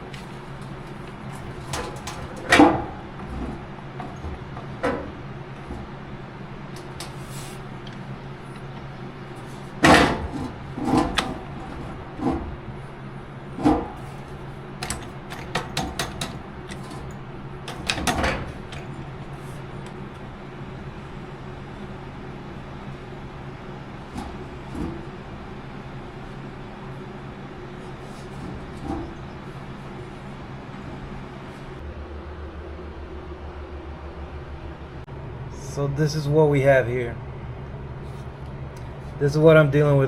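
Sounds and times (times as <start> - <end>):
steady low hum: 0.0 - 40.0
metal parts knocking and clanking: 0.6 - 5.9, 13.6 - 19.9.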